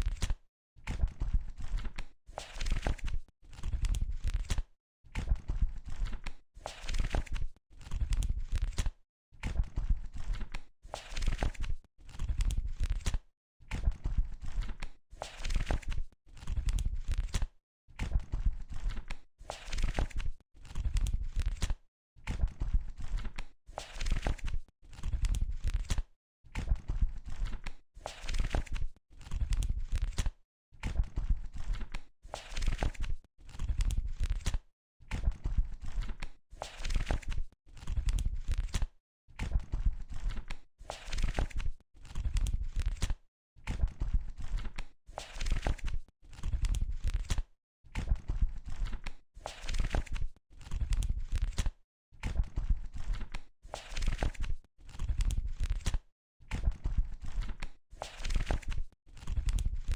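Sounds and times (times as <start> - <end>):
book pages flipping: 1.6 - 4.7, 5.8 - 8.9, 10.2 - 13.2, 14.5 - 17.5, 18.7 - 21.8, 23.0 - 26.0, 27.2 - 30.4, 31.5 - 34.6, 35.8 - 38.9, 40.1 - 43.2, 44.4 - 47.5, 48.6 - 51.8, 52.6 - 56.0, 56.9 - 59.9.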